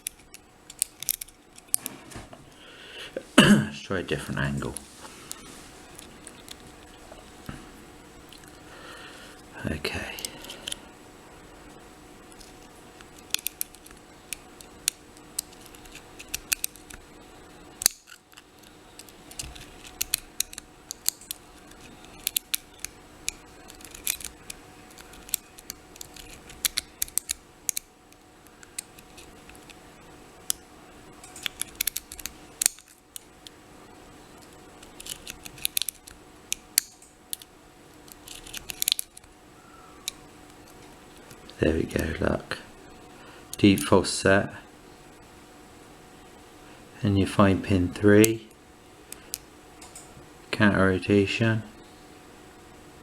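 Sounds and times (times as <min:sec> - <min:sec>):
lock pick clicking in padlock: 0:00.0 - 0:01.8, 0:19.0 - 0:27.9, 0:31.4 - 0:33.0, 0:38.2 - 0:39.2.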